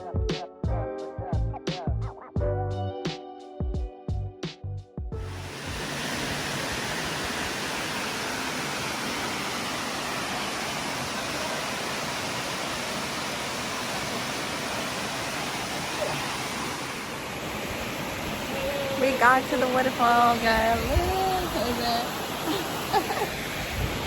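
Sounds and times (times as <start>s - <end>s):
waterfall roaring: 5.3s - 24.0s.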